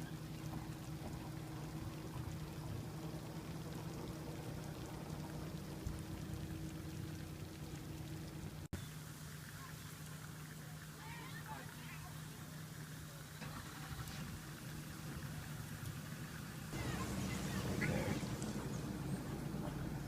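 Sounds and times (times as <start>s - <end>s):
steady low hum: 0.0s - 9.7s.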